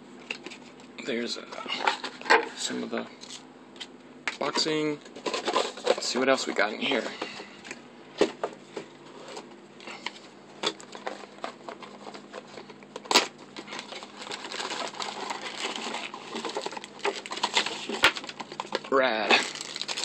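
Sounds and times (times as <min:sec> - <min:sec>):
packaging crinkling: 0:10.6 - 0:20.0.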